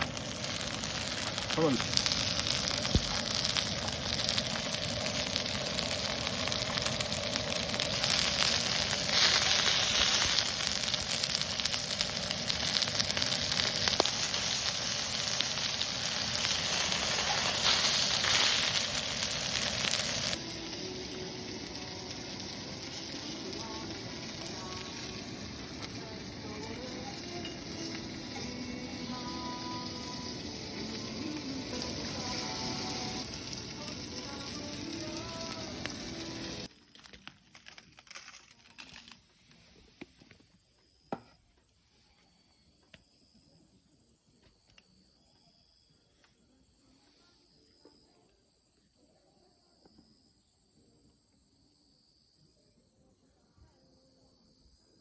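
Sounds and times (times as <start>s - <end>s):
food sizzling in a hot pan: 0.0s - 39.1s.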